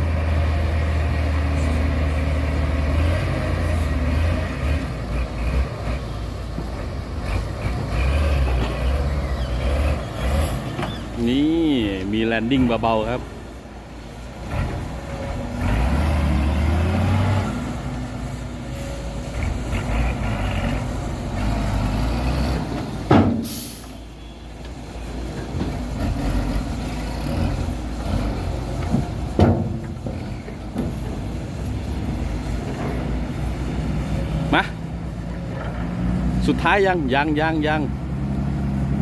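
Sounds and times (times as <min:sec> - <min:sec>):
diesel truck engine running: 0:00.0 - 0:39.0
air brake hisses: 0:23.4 - 0:24.1.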